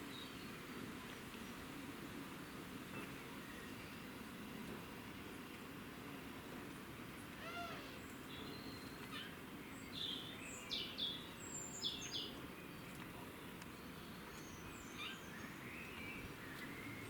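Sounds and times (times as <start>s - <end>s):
outdoor background noise: 0.0s - 17.0s.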